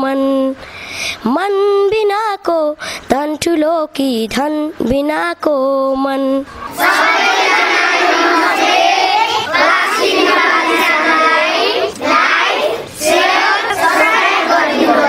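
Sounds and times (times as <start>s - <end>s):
child singing: 1.3s - 15.0s
children's voices: 6.7s - 15.0s.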